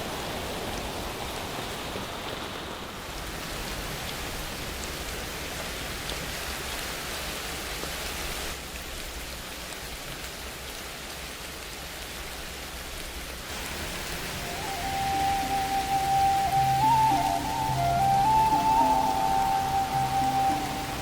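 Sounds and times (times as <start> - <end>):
steady hiss: 12.1 - 21.0
held musical tone: 14.2 - 21.0.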